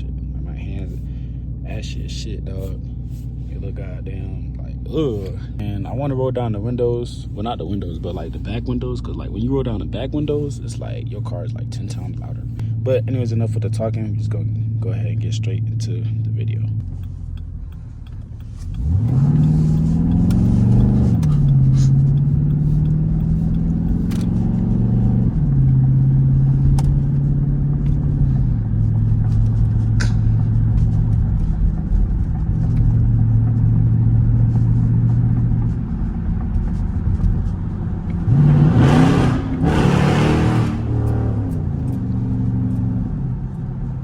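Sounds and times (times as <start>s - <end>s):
v eight engine accelerating: 0.0s - 44.0s
sharp engine revs: 18.4s - 30.8s, 37.9s - 42.9s.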